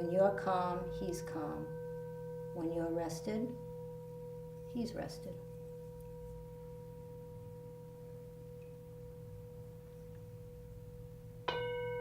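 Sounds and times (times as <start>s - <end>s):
singing bowl ringing: 0.0s - 12.0s.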